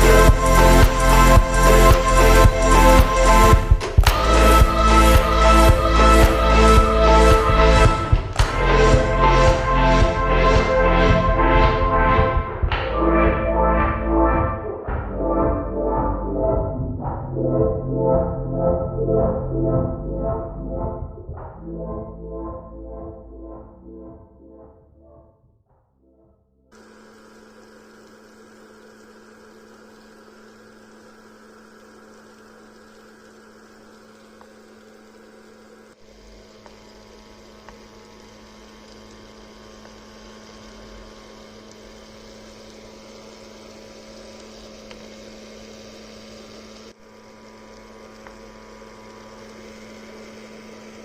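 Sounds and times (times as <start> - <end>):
small motor humming and hissing: 0.0 - 11.6, 26.8 - 51.0.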